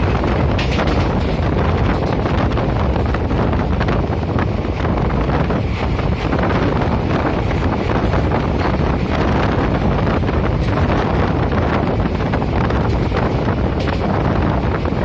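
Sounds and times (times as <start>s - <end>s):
train rumbling and rattling: 0.0s - 15.0s
wind buffeting microphone: 0.0s - 15.0s.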